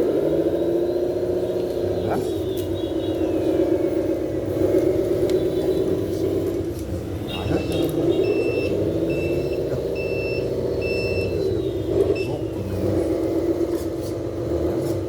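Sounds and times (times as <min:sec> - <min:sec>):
toy diesel engine sound: 0:00.0 - 0:15.0
high reversing beeps: 0:07.3 - 0:12.6.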